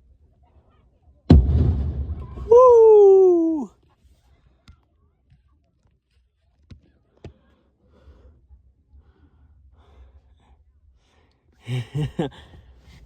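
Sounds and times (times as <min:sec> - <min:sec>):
muffled fireworks bangs: 0:01.3 - 0:02.8
soft breathing: 0:07.3 - 0:11.6.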